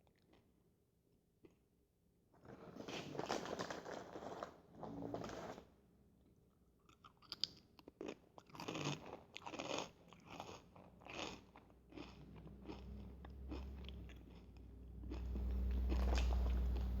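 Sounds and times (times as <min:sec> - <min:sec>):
soft chewing: 0:06.5 - 0:17.0
corn chips crunching: 0:06.8 - 0:17.0
low hum: 0:12.3 - 0:17.0.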